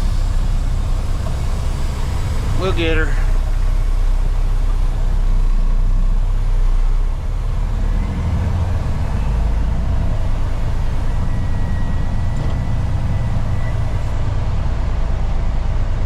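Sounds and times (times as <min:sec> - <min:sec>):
diesel engine rumble: 0:00.0 - 0:16.0
faint thin whine: 0:08.4 - 0:14.7.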